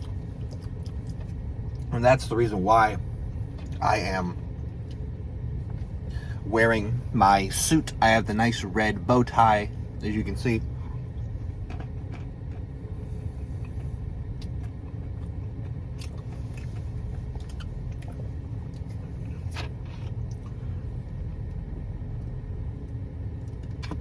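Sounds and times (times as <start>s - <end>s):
man chewing food: 0.0s - 1.9s, 3.0s - 3.8s, 10.6s - 24.0s
mouth clicks and crunches: 0.0s - 1.9s, 13.6s - 20.6s, 23.4s - 24.0s
low background rumble: 0.0s - 24.0s.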